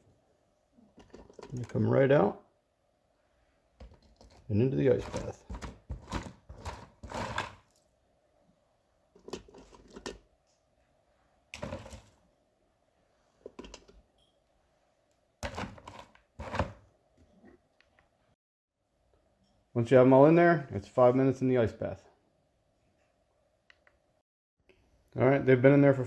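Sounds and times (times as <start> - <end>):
eggs knocking and clinking: 1.0 - 1.8.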